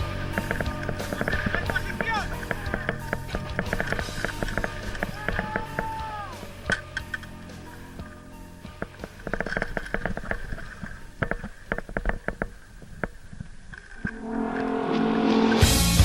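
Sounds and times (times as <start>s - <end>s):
sharp clicks and snaps: 0.0s - 6.0s, 6.6s - 14.2s
music: 0.0s - 13.1s, 14.0s - 16.0s.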